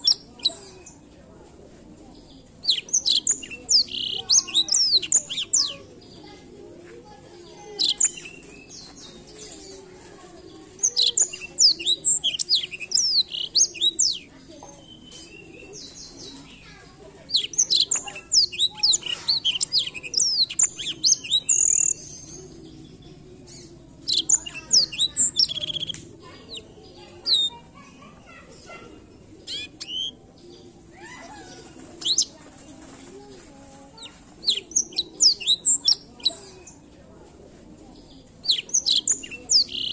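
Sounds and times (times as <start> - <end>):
canary singing high warbles: 2.6 - 6.1, 7.6 - 9.7, 10.8 - 16.6, 17.3 - 32.4, 33.9 - 36.8, 38.4 - 39.9.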